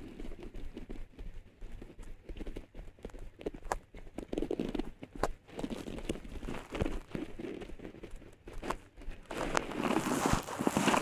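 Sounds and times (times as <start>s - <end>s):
microphone rubbing on clothing: 0.0s - 11.0s.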